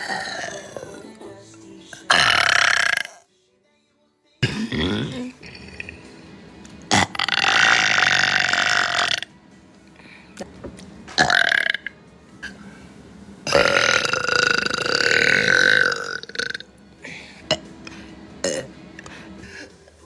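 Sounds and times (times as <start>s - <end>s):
woman burping: 0.0s - 1.0s, 2.1s - 3.2s, 4.4s - 6.0s, 6.9s - 9.3s, 13.5s - 16.7s, 18.4s - 18.7s.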